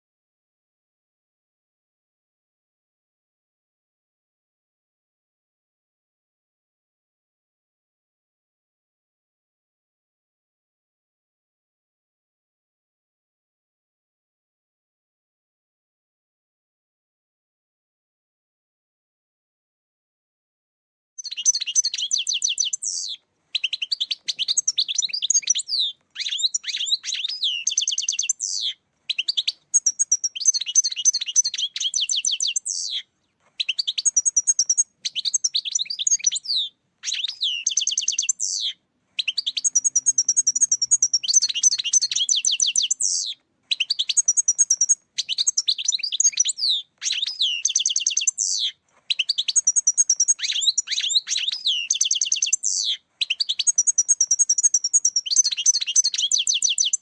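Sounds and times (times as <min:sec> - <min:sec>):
goldfinch twittering song: 0:21.2 - 0:57.0.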